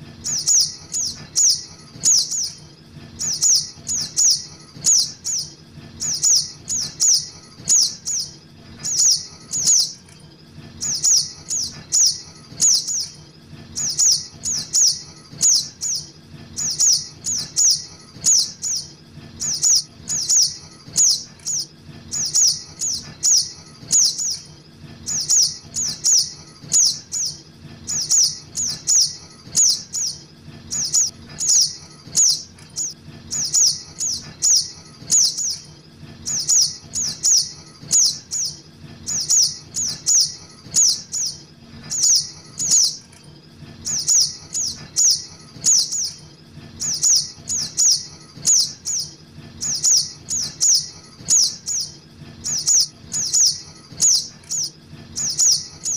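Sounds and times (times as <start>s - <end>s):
faint steady low hum: 0.0s - 55.9s
bird calling with sharp high chips: 0.3s - 2.6s, 3.2s - 10.1s.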